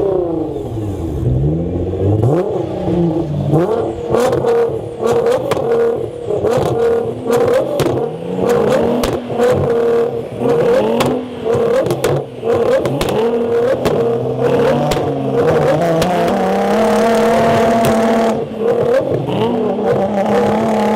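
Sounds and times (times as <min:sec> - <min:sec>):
car engine revving hard: 0:00.0 - 0:20.9
exhaust cracks: 0:01.2 - 0:20.9.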